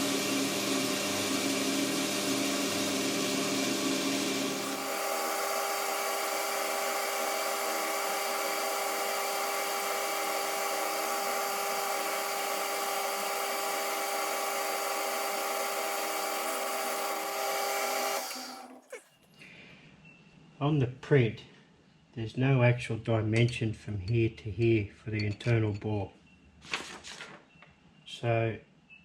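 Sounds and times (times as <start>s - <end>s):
metal lathe whining: 0.0s - 19.0s.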